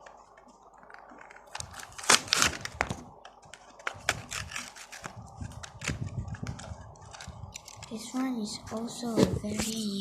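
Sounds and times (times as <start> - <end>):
plastic packaging crackling: 0.0 - 8.4.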